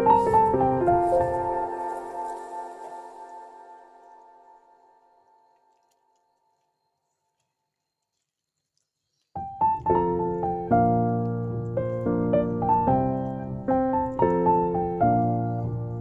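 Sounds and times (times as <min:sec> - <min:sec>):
piano music: 0:00.0 - 0:05.4, 0:09.4 - 0:16.0.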